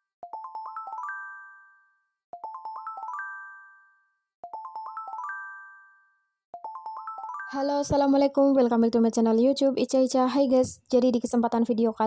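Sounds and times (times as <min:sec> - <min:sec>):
chiming bell-like jingle: 0:00.3 - 0:07.9.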